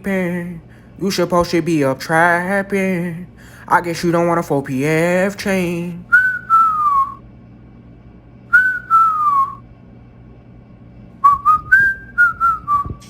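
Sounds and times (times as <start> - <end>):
person whistling a tune: 6.1 - 7.2, 8.5 - 9.6, 11.2 - 13.0.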